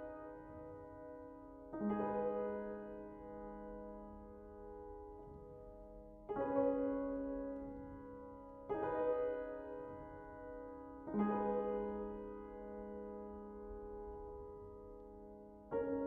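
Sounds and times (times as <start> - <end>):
piano chords ringing: 0.0 - 16.0.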